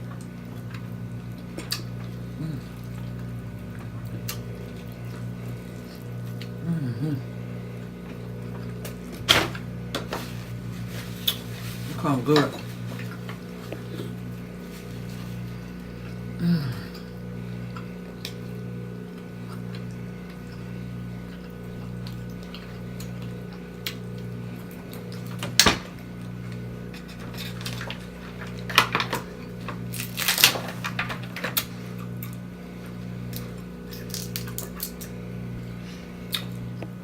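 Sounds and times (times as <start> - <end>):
steady low hum: 0.0 - 37.0
crab legs cracking by hand: 28.7 - 31.7, 33.3 - 35.2.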